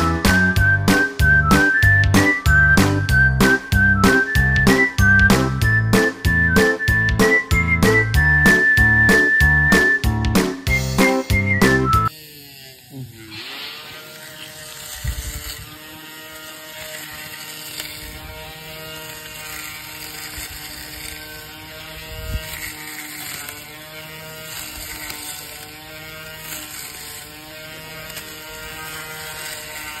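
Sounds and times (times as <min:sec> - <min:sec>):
low thumps: 0:00.0 - 0:12.1
grass trimmer motor whining: 0:00.0 - 0:30.0.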